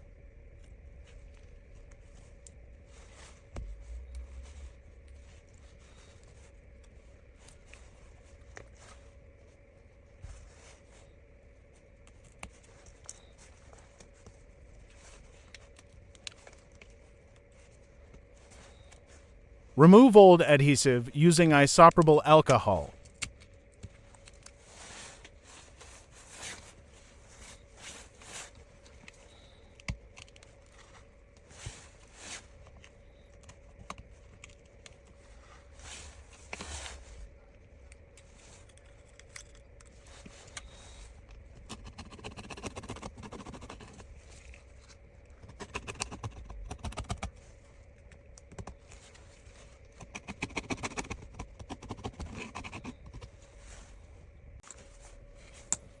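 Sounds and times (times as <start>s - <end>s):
faint steady hum: 18.7s - 23.2s.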